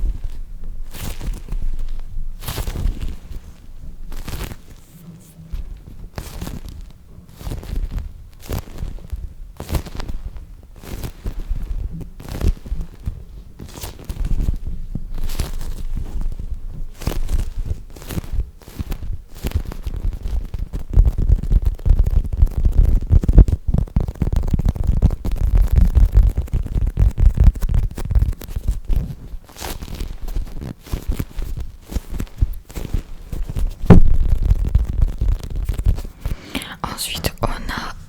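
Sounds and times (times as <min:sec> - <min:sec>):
short crackles: 0:21.0 - 0:36.5.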